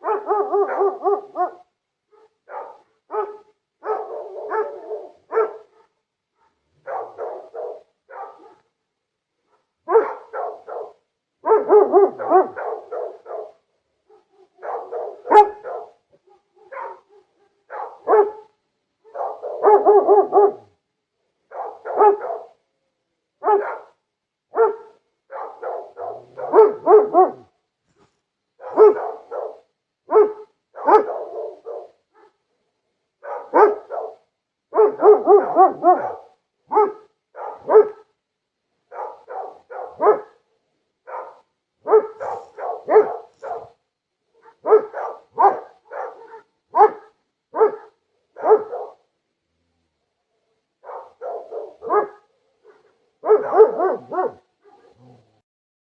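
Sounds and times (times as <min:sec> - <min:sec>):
dog barking: 0:00.0 - 0:08.7, 0:09.5 - 0:20.8, 0:21.5 - 0:22.6, 0:23.4 - 0:27.5, 0:28.6 - 0:32.4, 0:33.2 - 0:38.1, 0:38.9 - 0:49.1, 0:50.8 - 0:55.3.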